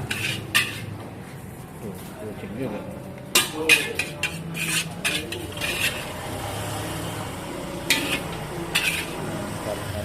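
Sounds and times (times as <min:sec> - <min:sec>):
metal spatula scraping a wok: 0:00.0 - 0:01.0, 0:03.3 - 0:09.6.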